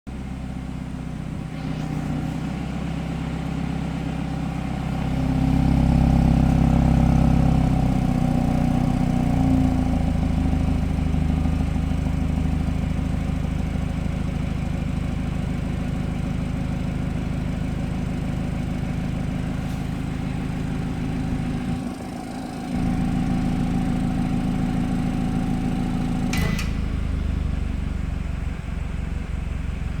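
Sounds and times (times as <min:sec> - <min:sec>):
car engine idling: 0:00.1 - 0:30.0
engine click: 0:26.3 - 0:26.9.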